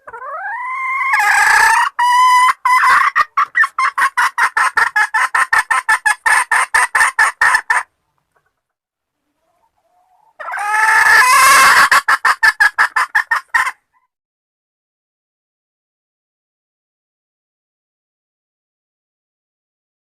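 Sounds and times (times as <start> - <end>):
junglefowl hen calling: 0.0 - 8.6, 9.2 - 14.1.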